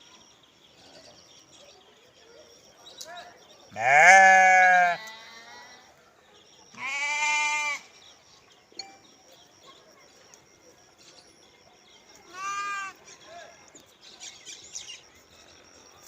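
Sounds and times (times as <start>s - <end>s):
sheep bleating: 3.8s - 5.8s, 6.8s - 7.9s, 12.3s - 13.0s.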